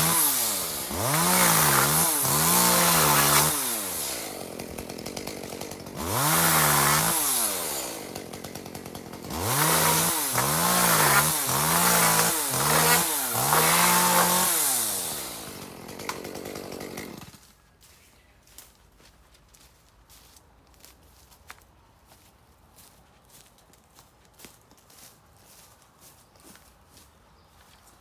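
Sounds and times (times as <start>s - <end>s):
chainsaw revving: 0.0s - 17.4s.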